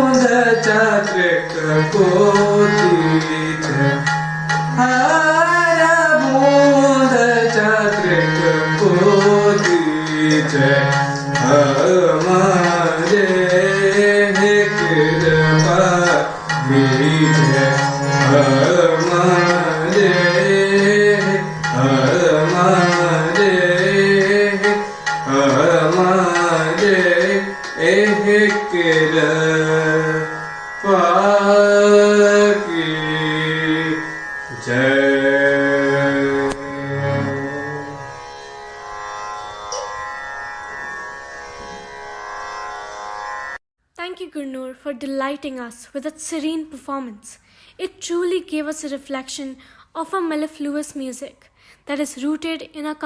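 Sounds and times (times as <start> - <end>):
tabla: 0.0 - 38.0, 39.7 - 40.0
classical singing: 0.0 - 38.2.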